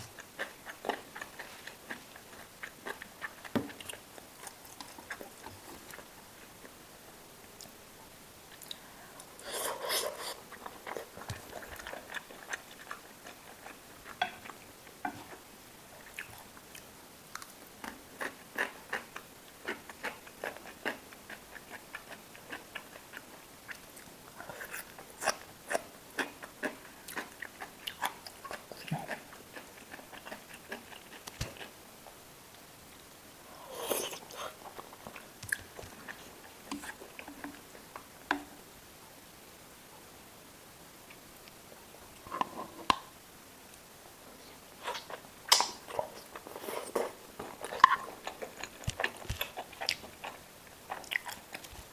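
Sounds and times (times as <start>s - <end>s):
chewing and biting food: 16.0s - 31.8s, 44.8s - 51.9s.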